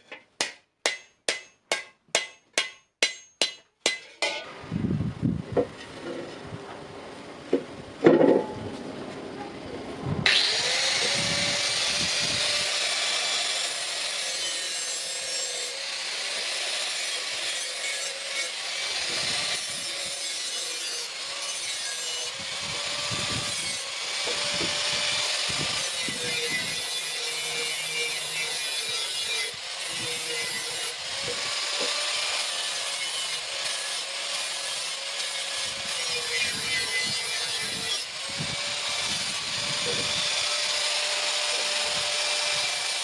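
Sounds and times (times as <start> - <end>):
electric grinder grinding steel: 10.2 - 43.0.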